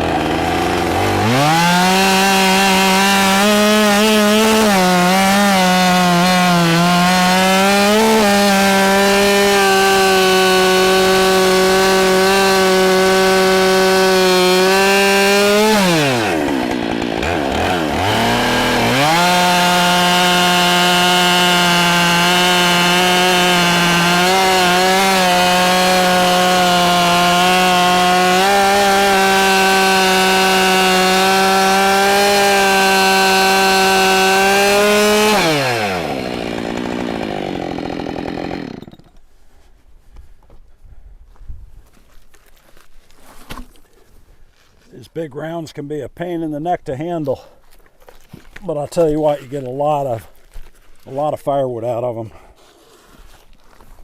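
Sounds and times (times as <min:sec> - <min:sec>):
chainsaw cutting logs: 0:00.0 - 0:39.4.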